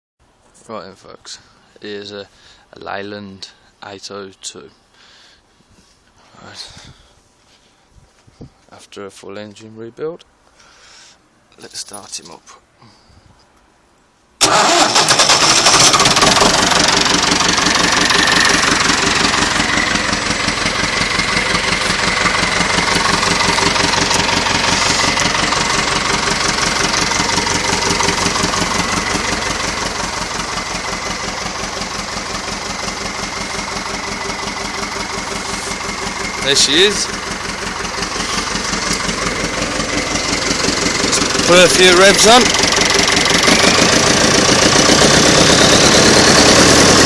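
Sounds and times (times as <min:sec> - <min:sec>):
tractor diesel engine starting and running: 0:14.4 - 0:47.0.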